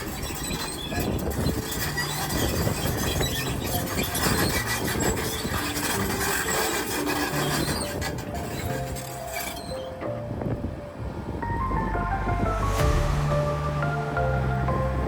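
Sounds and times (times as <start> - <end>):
heavy machinery metallic din: 11.8 - 15.0.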